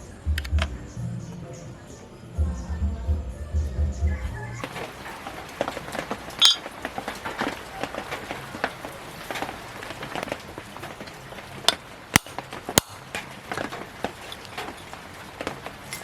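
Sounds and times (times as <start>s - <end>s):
small metal pieces clicking: 6.4s - 6.6s.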